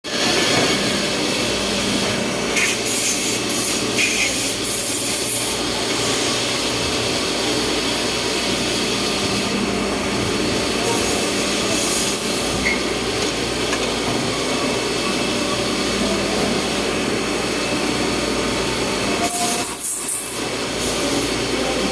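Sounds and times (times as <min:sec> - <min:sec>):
milling machine grinding: 0:00.2 - 0:19.6
machine hum: 0:05.0 - 0:19.3.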